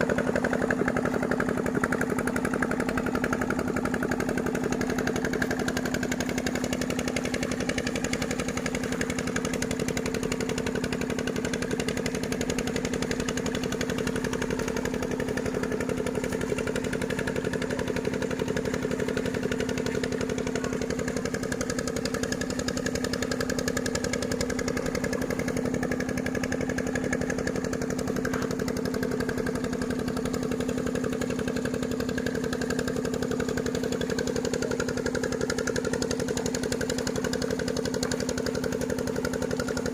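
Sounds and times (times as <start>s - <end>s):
engine droning: 0.0s - 39.9s.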